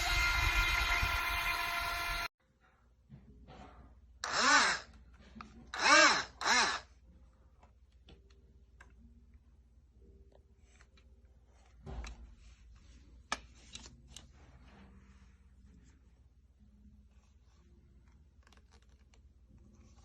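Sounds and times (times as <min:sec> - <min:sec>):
boat jet pump motors whining: 0:00.0 - 0:02.3.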